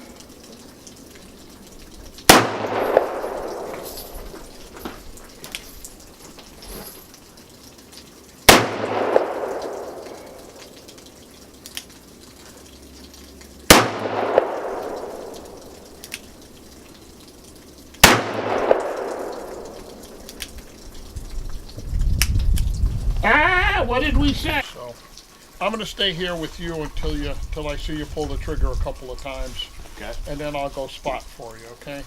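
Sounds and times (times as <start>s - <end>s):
gunshots with ringing echo: 2.3s - 4.2s, 8.5s - 10.5s, 13.7s - 15.5s, 18.0s - 19.8s.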